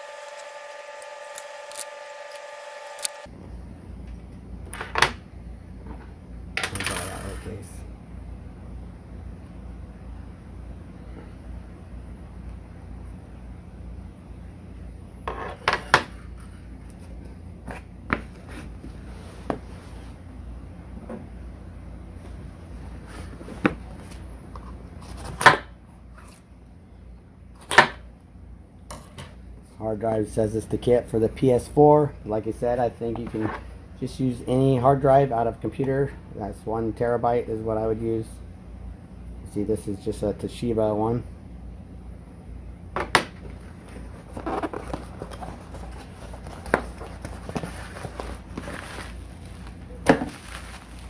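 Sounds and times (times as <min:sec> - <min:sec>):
packaging rustling: 0:43.8 - 0:51.0.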